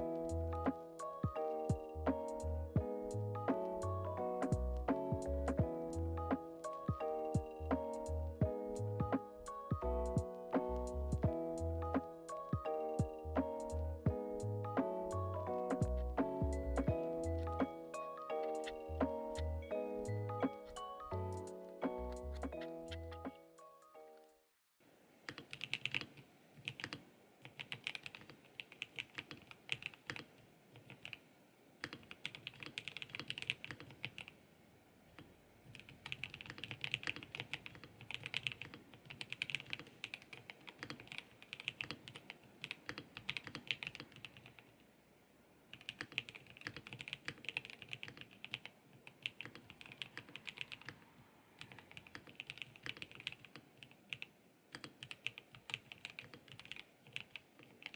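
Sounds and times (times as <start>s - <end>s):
mechanical keyboard typing: 25.3s - 31.2s, 31.8s - 34.4s, 35.7s - 44.7s, 45.7s - 51.0s, 51.6s - 57.9s.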